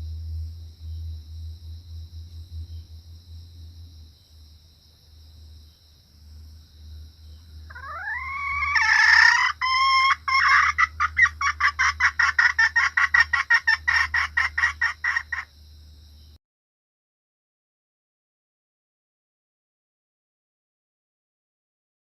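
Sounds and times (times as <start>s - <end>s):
junglefowl cackling: 7.7s - 15.5s
junglefowl squawk: 7.7s - 15.5s.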